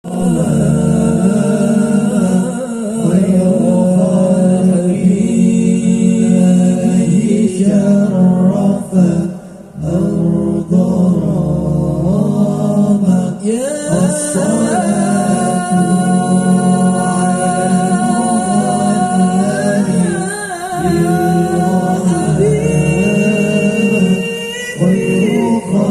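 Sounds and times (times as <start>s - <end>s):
person singing: 13.1s - 25.9s.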